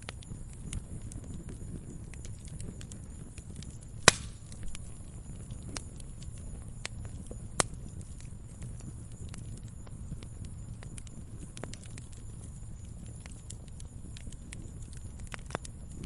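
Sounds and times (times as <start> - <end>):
fire crackling: 0.0 - 16.0
low rumble of flames: 0.0 - 16.0
sharp loud pops: 4.0 - 4.4.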